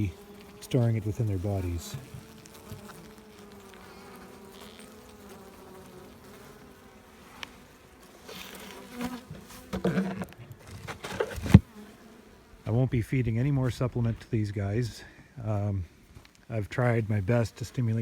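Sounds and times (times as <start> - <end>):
honeybees buzzing: 0.0 - 14.2.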